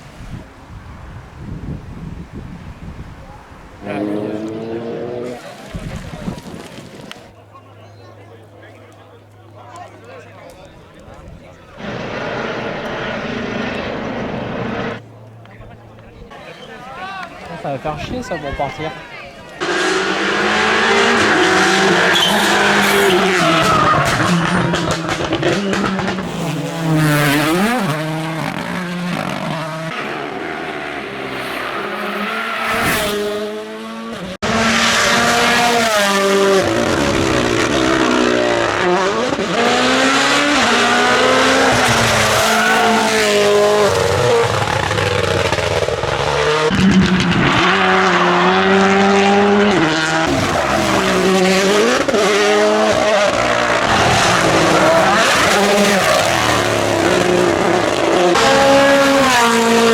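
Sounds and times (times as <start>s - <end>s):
rally car engines revving: 3.8s - 7.4s, 11.1s - 16.7s, 19.5s - 59.9s.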